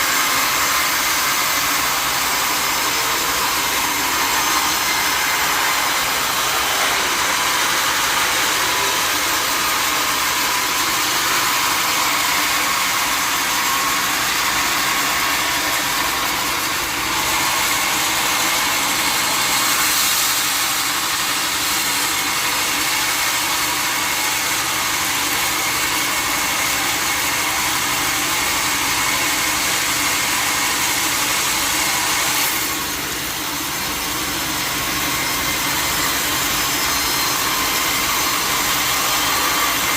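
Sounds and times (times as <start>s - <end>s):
machine hum: 0.0s - 19.6s.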